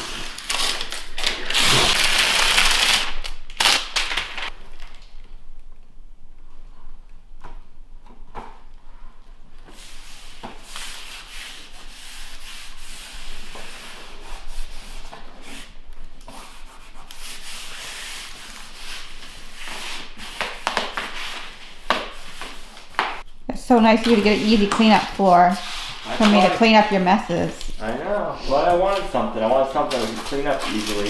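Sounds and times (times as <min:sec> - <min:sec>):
broom sweeping a floor: 0:09.7 - 0:31.0.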